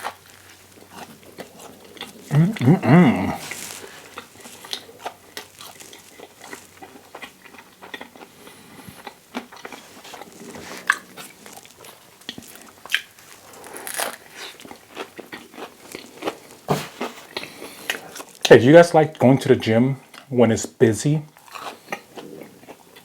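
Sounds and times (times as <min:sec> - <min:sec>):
food crunching: 0:00.0 - 0:18.5, 0:21.3 - 0:23.0
person biting and chewing: 0:00.0 - 0:18.5, 0:21.4 - 0:23.0.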